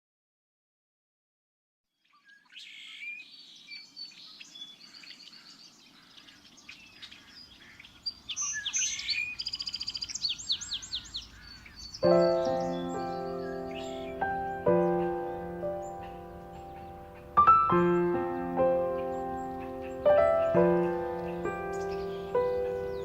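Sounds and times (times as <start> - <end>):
songbirds singing: 1.9 - 23.0
instrumental music chord: 12.0 - 23.0.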